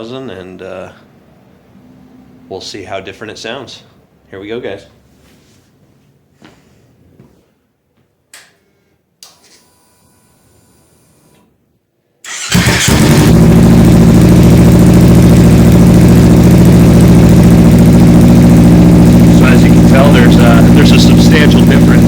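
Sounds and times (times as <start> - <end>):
motorcycle engine starting and idling: 12.2 - 22.0.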